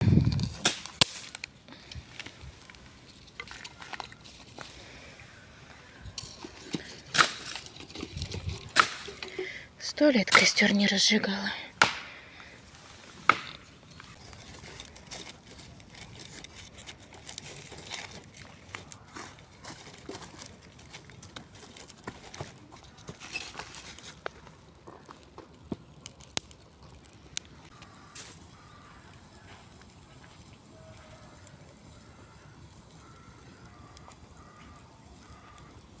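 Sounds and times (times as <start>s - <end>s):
sharp fire pop: 0.0s - 1.5s, 8.7s - 9.2s, 11.8s - 12.2s
campfire crackling: 0.0s - 36.0s.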